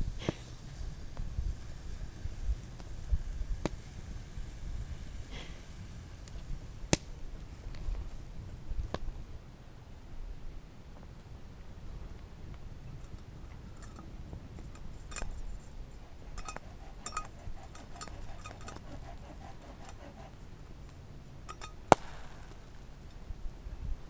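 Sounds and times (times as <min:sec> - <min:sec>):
hard objects clinking and ticking: 0:16.0 - 0:20.4.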